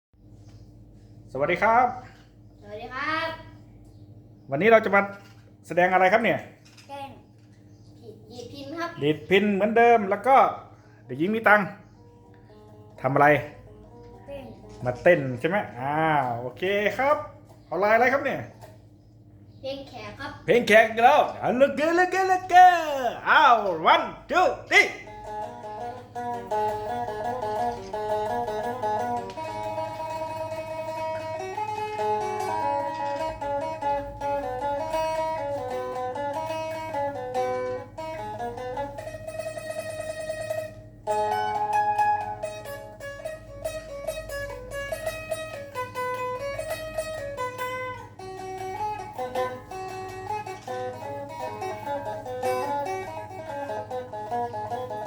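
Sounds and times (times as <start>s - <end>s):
plucked lute melody: 24.8s - 55.0s.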